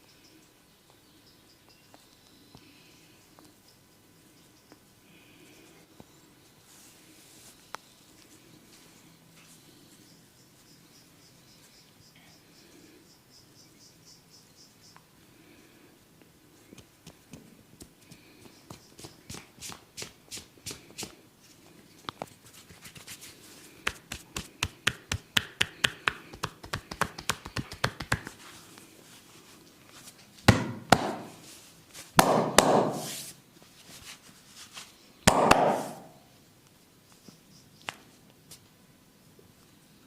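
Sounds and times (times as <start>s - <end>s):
noisy massage strokes: 4.1s - 12.0s, 15.4s - 38.6s
hands tapping in massage: 23.8s - 28.4s, 30.5s - 31.3s, 35.3s - 36.1s.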